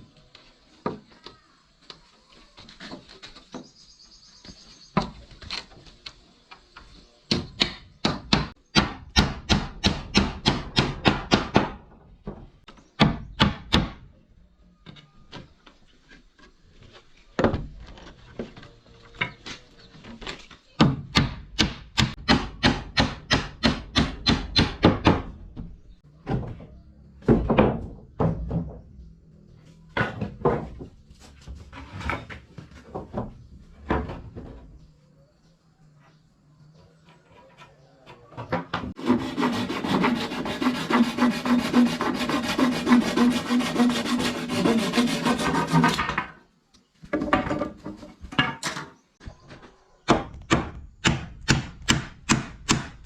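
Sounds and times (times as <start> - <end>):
hammer striking wood: 7.3 - 11.8, 20.8 - 25.4, 50.1 - 53.0.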